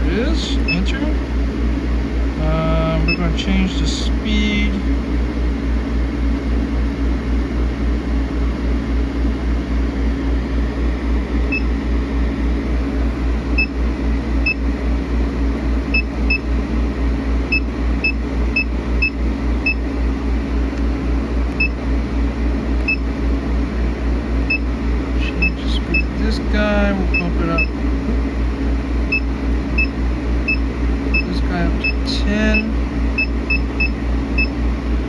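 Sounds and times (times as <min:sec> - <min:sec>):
machine fans and pumps humming: 0:00.0 - 0:35.0
short control panel beeps: 0:03.1 - 0:03.3, 0:11.5 - 0:11.7, 0:29.1 - 0:34.6.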